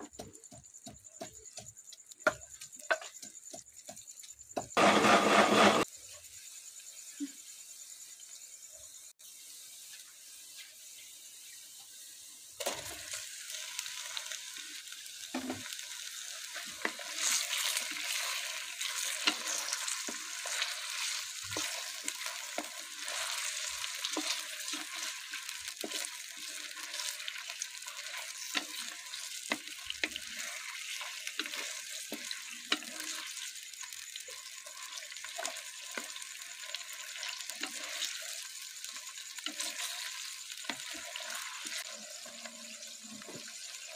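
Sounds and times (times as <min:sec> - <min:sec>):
spoon knocking and scraping pan: 0:00.0 - 0:05.9, 0:15.3 - 0:15.7, 0:16.6 - 0:33.4
food sizzling in hot oil: 0:00.0 - 0:43.9.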